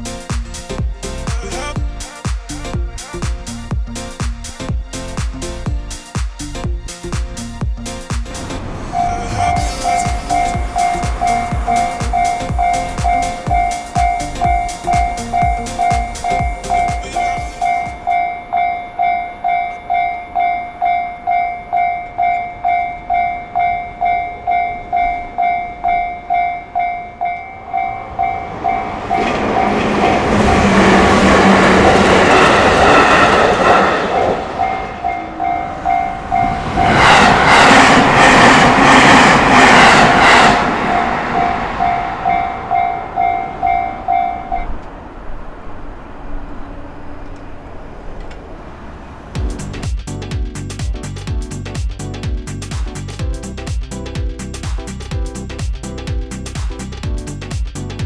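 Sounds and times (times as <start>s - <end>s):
trains rumbling past: 0.0s - 51.2s
level crossing bell ringing: 34.6s - 36.5s, 41.4s - 44.8s.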